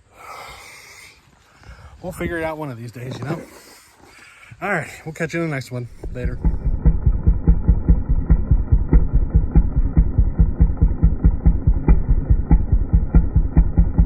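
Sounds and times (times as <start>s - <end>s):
small gas engine idling: 5.9s - 14.0s.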